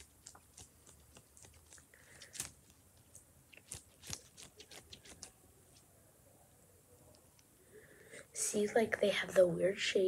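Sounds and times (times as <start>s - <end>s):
squishy toy squelching: 0.0s - 5.8s.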